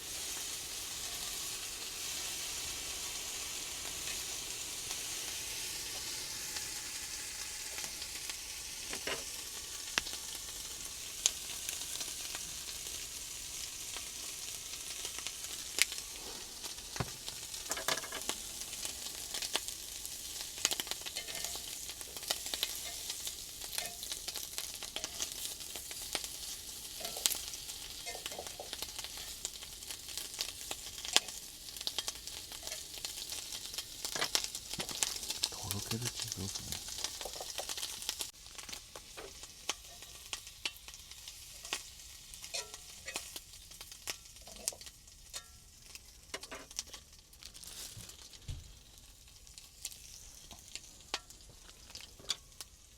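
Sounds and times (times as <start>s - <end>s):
food sizzling in a pan: 0.0s - 52.9s.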